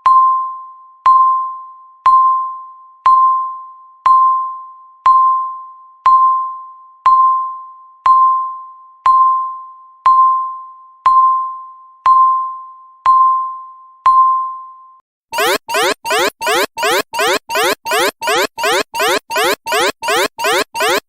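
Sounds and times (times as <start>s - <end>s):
timer ding: 15.4s - 21.0s.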